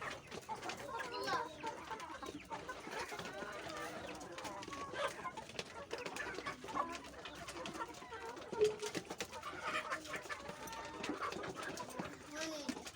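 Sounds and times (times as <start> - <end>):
chickens clucking: 0.0 - 12.9.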